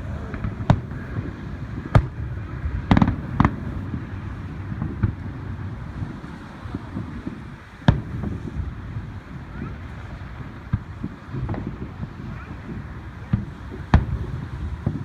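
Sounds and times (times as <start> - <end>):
low rumble: 0.0 - 9.6
fireworks bangs: 0.0 - 15.0
rattle of firework pops: 2.9 - 3.8, 7.8 - 8.5, 12.7 - 15.0.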